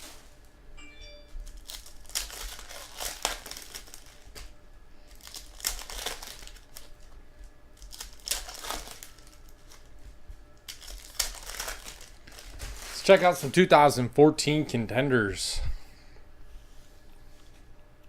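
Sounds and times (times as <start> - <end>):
card pack wrappers tearing and crinkling: 1.4 - 7.2, 7.8 - 10.0, 10.6 - 13.6.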